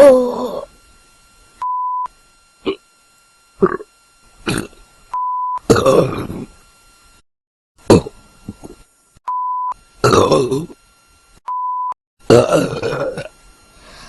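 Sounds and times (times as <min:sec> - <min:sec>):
short steady beep: 0:01.6 - 0:02.1, 0:05.1 - 0:05.6, 0:09.3 - 0:09.8, 0:11.5 - 0:12.0
person burping: 0:02.6 - 0:02.8, 0:03.6 - 0:04.8, 0:05.7 - 0:06.5, 0:07.8 - 0:08.2, 0:10.0 - 0:10.8, 0:12.2 - 0:13.3.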